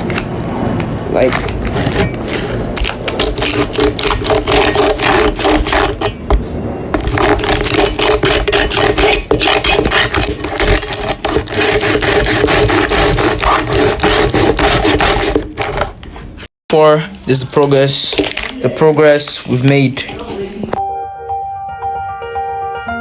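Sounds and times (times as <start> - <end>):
blade sawing plastic: 1.3 - 6.2, 7.0 - 16.0.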